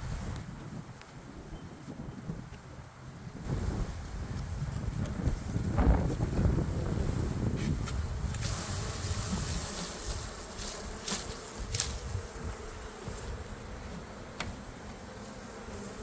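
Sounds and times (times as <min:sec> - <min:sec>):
bees buzzing: 0:05.3 - 0:16.0.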